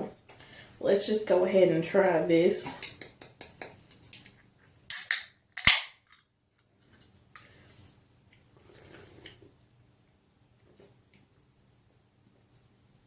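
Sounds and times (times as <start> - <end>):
can opening pop and hiss: 4.9 - 6.0.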